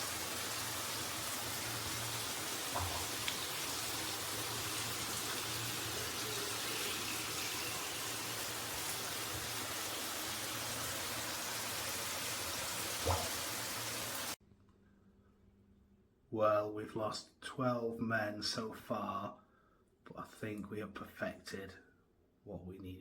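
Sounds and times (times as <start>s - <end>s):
shower head spraying water: 0.0s - 14.4s.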